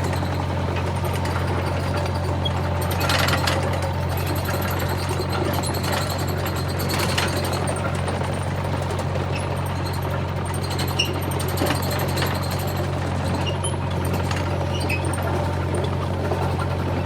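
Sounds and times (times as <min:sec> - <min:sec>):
excavator engine droning: 0:00.0 - 0:17.0.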